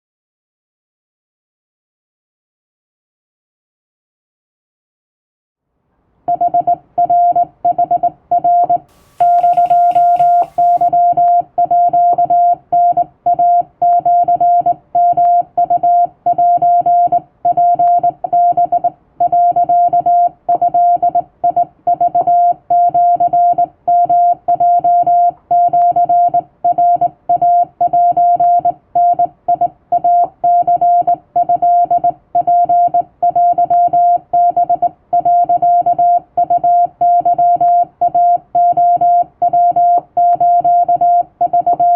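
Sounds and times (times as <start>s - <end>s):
morse code tone: 8.9s - 11.9s.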